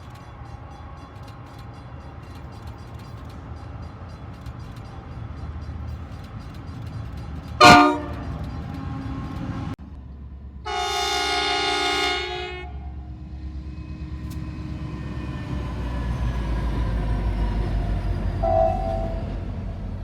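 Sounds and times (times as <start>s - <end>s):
low train rumble: 0.0s - 20.0s
train air horn: 7.6s - 8.3s, 10.7s - 13.0s, 18.4s - 19.4s.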